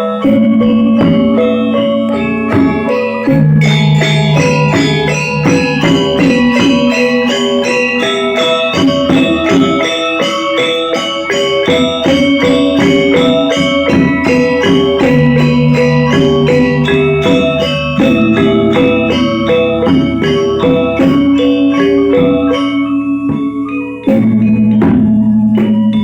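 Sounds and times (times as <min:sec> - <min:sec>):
gamelan ensemble playing: 0:00.0 - 0:26.0.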